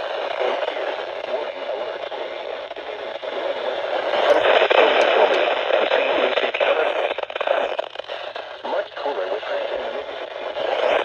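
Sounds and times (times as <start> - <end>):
radio static hiss: 0.0 - 11.0
crackling clicks: 2.6 - 8.6.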